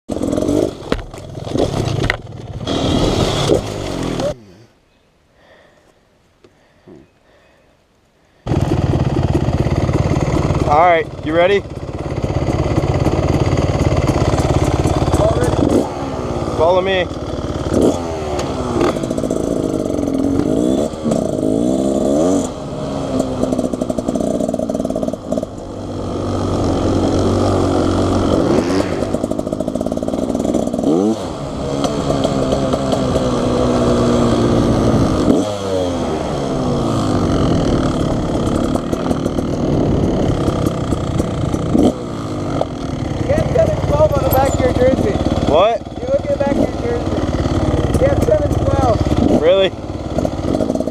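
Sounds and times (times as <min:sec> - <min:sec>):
dirt bike engine revving: 0:00.1 - 0:04.6, 0:08.5 - 0:50.9.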